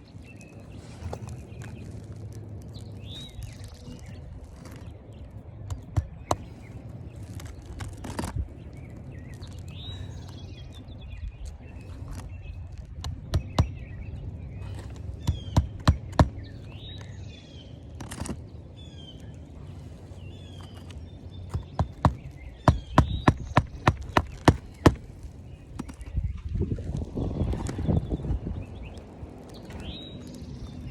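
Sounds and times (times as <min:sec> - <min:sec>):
birds chirping: 0:00.0 - 0:30.9
hammer striking roofing nails: 0:15.2 - 0:16.4, 0:21.5 - 0:25.0.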